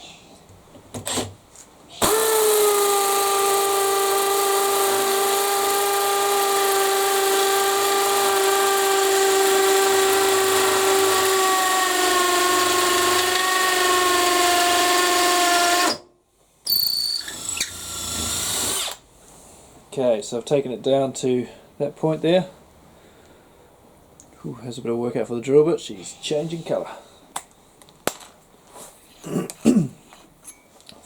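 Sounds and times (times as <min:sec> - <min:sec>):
hammer drill boring into block: 0:02.0 - 0:16.0, 0:16.7 - 0:19.0.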